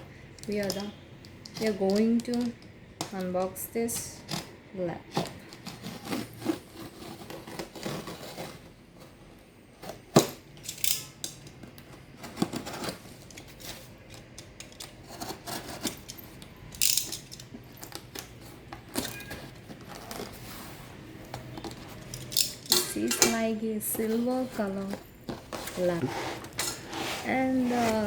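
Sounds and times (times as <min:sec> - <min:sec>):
packaging scraping and rustling: 0:04.2 - 0:10.5, 0:11.6 - 0:16.4, 0:17.4 - 0:28.0.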